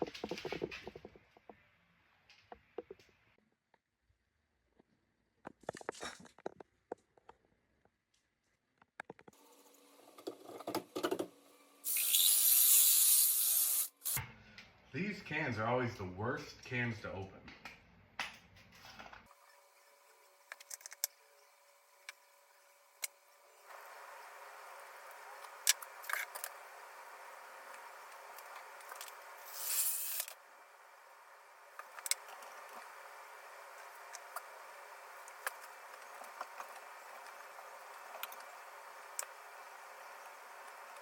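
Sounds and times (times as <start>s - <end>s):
short scraping hiss: 29.4s - 30.3s.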